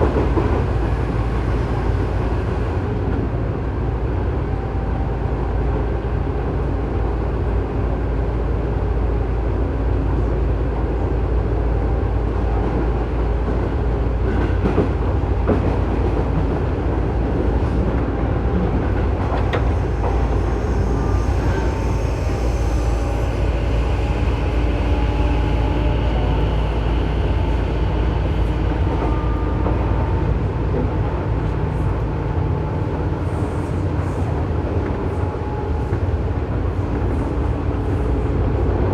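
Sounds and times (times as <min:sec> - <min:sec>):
train wheels rumbling on rail: 0:00.0 - 0:38.9
electrical whine: 0:19.6 - 0:30.8.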